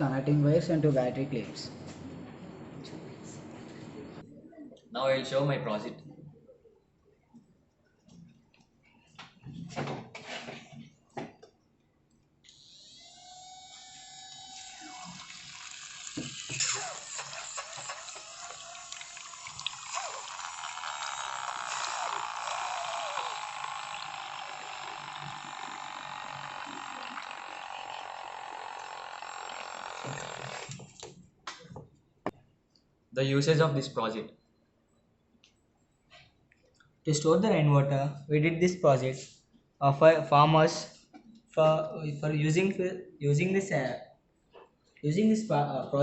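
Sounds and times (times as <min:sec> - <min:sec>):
water running and splashing: 0:14.7 - 0:25.1, 0:28.8 - 0:31.1.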